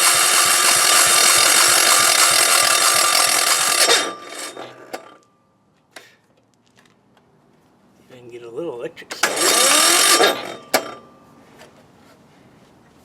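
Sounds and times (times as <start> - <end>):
generator engine running: 0.0 - 5.2, 9.1 - 11.1
engine knocks coasting to stop: 9.1 - 11.1.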